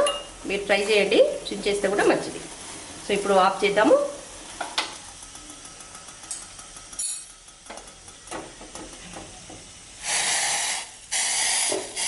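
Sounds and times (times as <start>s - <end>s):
faint steady hiss from pot: 0.0s - 12.0s
metal pot and utensils clinking: 4.7s - 9.0s.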